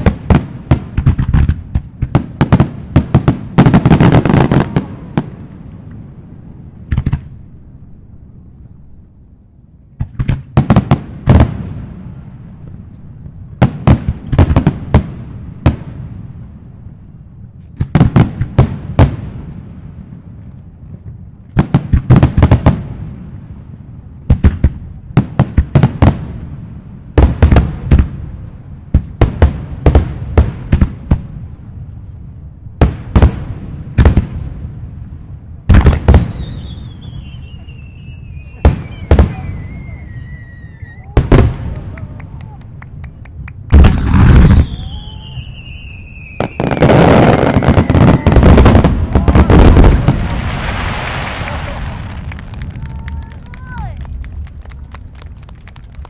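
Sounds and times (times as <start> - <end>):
fireworks bursting with sharp bangs: 0.0 - 7.8, 9.9 - 56.0
low rumbling echo: 41.1 - 56.0.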